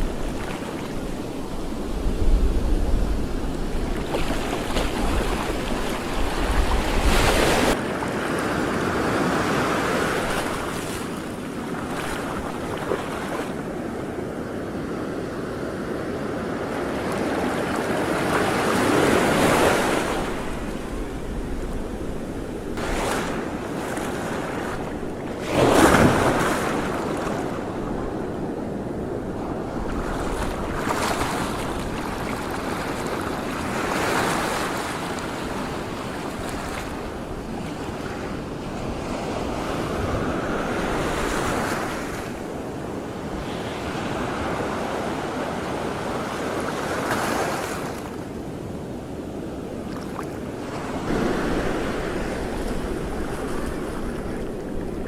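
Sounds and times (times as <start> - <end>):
wind buffeting microphone: 0.0 - 7.8, 17.1 - 45.6, 50.5 - 55.0
water waves washing: 0.0 - 14.1, 49.8 - 55.0.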